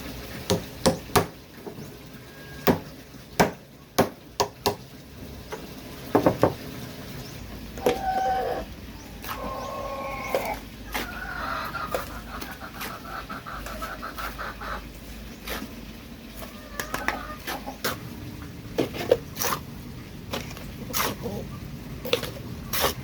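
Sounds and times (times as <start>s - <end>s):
chicken clucking: 7.8s - 15.7s, 16.3s - 18.0s.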